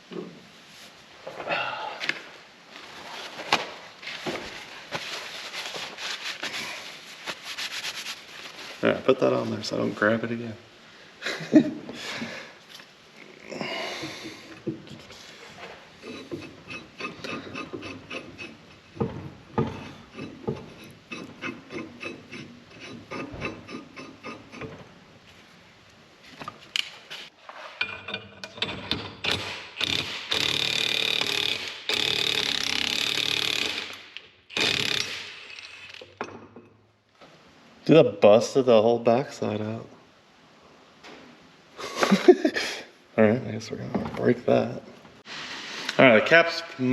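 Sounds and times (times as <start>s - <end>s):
impact wrench running: 29.2s - 35.9s
hand ratchet clicking: 29.2s - 36.0s.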